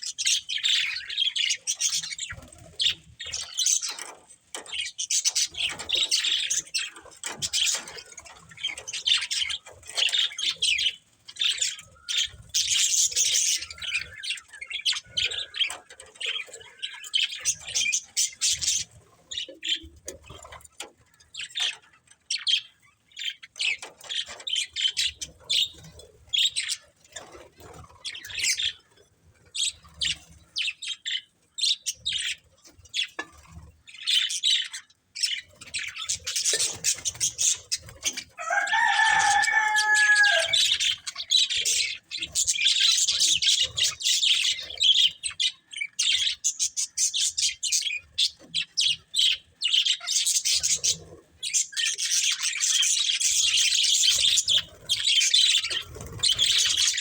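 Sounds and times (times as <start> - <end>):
budgerigars chirping: 33.9 - 57.0.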